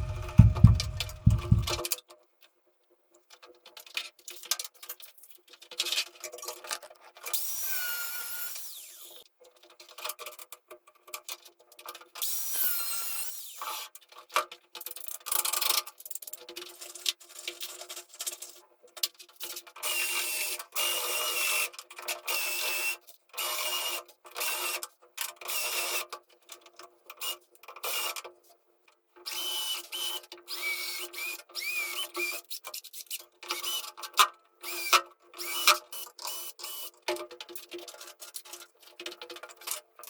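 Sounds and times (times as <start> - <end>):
clicks and knocks: 0.0 - 1.8
power tool whining: 0.0 - 1.8.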